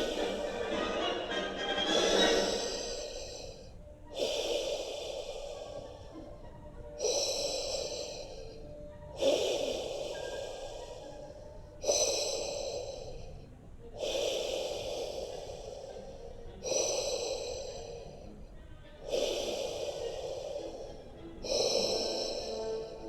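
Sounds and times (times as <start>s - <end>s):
rhythmic breathing-like hiss: 0.0s - 23.0s.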